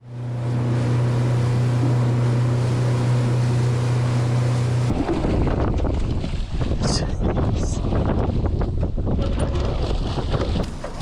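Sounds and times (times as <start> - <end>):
boat engine droning: 0.0 - 11.0
water wash: 0.0 - 11.0
wind buffeting microphone: 4.9 - 11.0.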